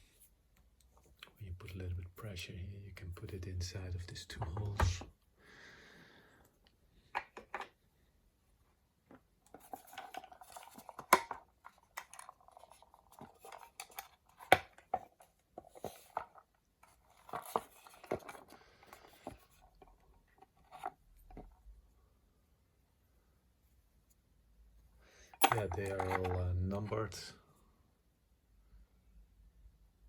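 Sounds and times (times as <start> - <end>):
small metal clinks and rattles: 25.3 - 26.5.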